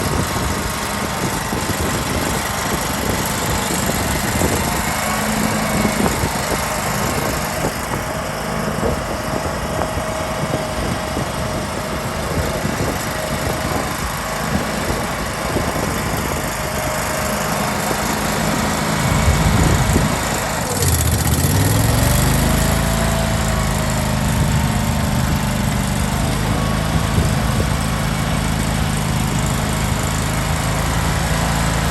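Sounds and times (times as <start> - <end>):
small gasoline engine running unevenly: 0.0 - 31.9.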